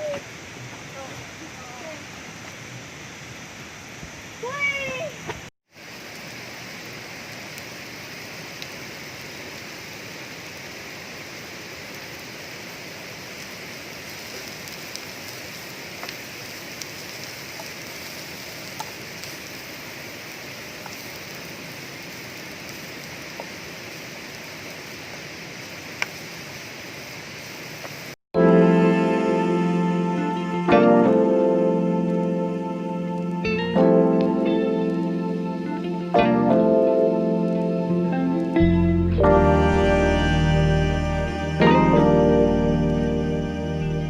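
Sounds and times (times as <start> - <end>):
water rushing: 28.4 - 44.0.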